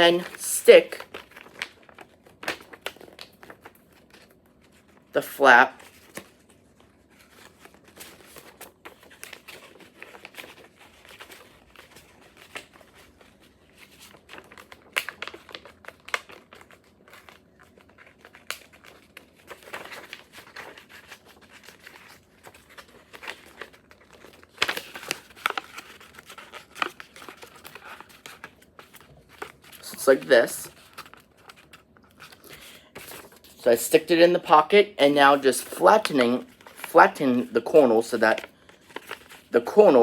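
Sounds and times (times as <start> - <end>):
paper rustling and crinkling: 0.0 - 5.1, 5.8 - 34.5, 35.3 - 40.0.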